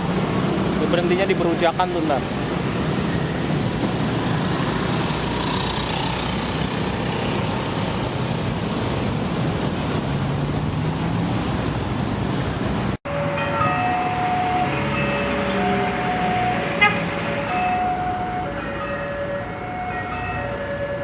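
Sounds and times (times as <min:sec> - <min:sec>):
heavy vehicle engine running: 0:13.1 - 0:21.0.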